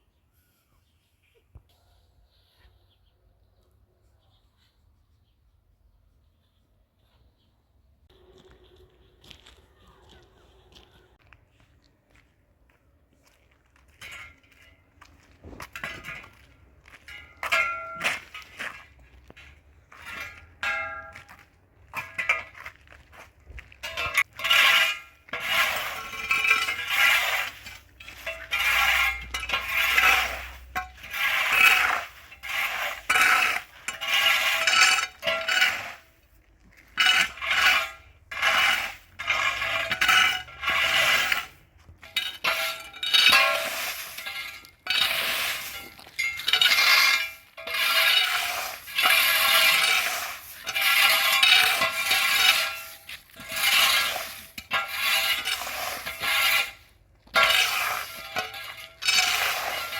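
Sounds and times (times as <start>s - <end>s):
hand tool scraping hard surface: 14.0s - 59.9s.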